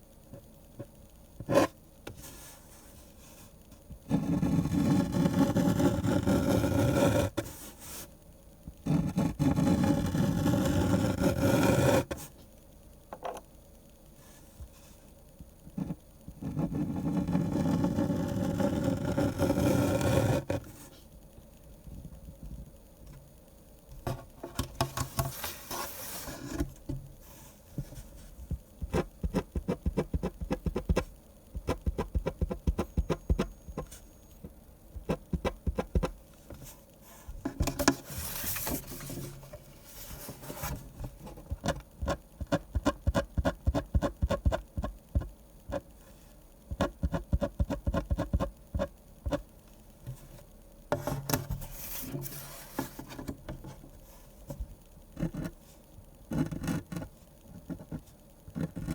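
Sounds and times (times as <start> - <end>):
pen scraping strokes: 4.1 - 8.1, 15.8 - 20.9, 28.8 - 34.0, 35.0 - 36.2
pen hatching strokes on paper: 28.8 - 33.9.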